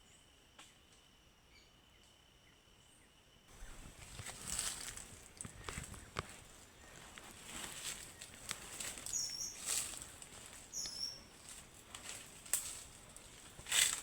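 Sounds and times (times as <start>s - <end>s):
steady high insect tone: 0.0s - 14.0s
rustling in leaf litter: 3.5s - 14.0s.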